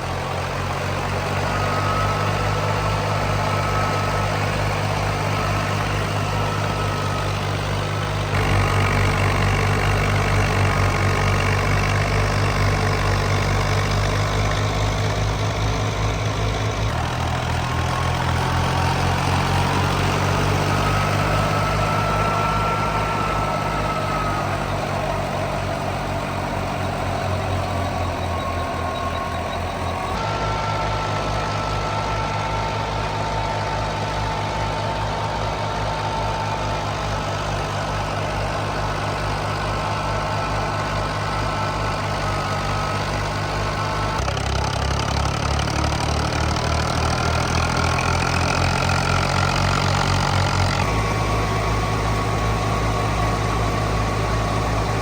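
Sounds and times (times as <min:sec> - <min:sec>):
thresher whine: 0:00.0 - 0:55.0
tractor diesel engine running: 0:00.0 - 0:55.0.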